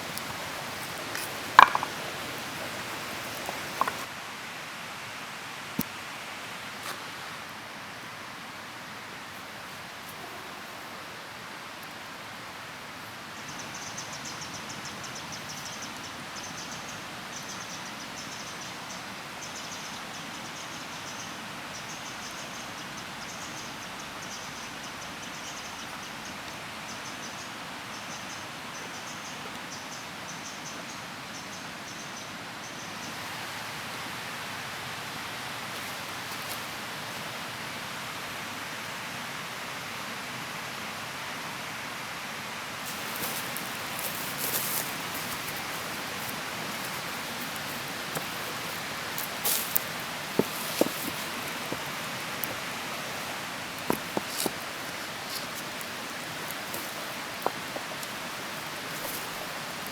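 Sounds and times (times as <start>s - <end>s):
steady even hiss: 0.0s - 4.1s, 33.3s - 59.9s.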